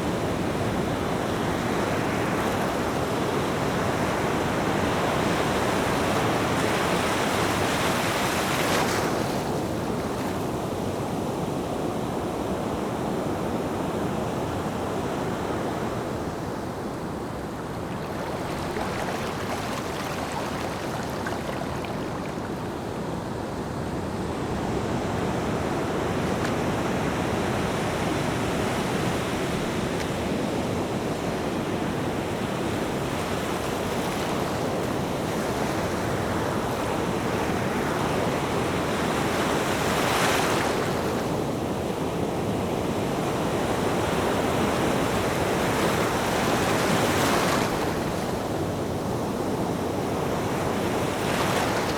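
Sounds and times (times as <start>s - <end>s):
ocean surf washing ashore: 0.0s - 51.9s.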